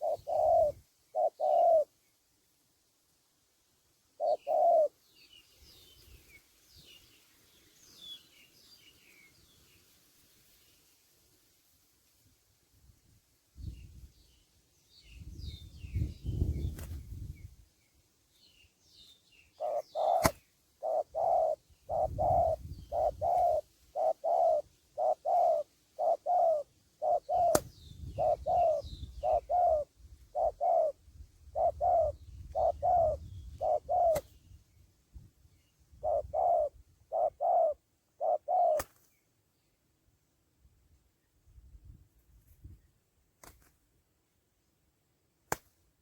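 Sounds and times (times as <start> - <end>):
dove cooing: 0.0 - 2.0, 4.2 - 5.0, 19.6 - 34.3, 36.0 - 38.9
small birds chirping: 0.0 - 2.3, 4.2 - 11.0, 13.6 - 40.0.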